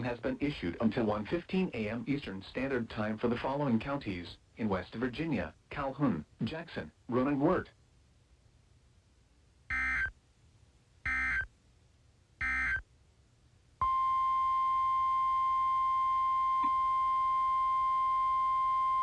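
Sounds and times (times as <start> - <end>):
steady alert tone: 9.7 - 10.1, 11.1 - 11.5, 12.4 - 12.8.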